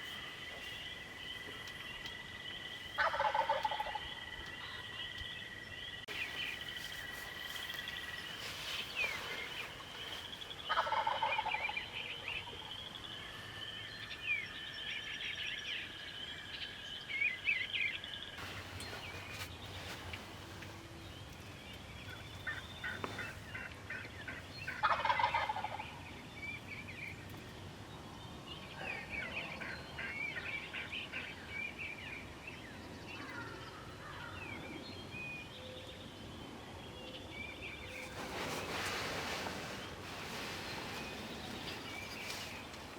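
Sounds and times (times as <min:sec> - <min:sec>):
songbirds singing: 0:00.0 - 0:42.9
turkey gobbling: 0:03.0 - 0:04.0, 0:10.7 - 0:11.7, 0:24.7 - 0:25.9.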